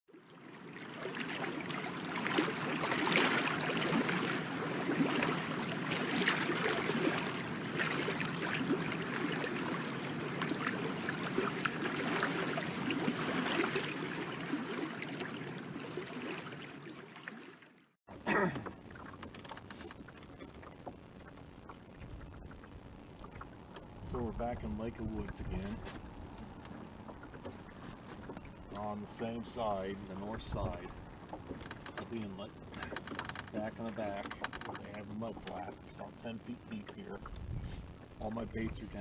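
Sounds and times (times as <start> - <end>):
water trickling and splashing: 0.1 - 18.0.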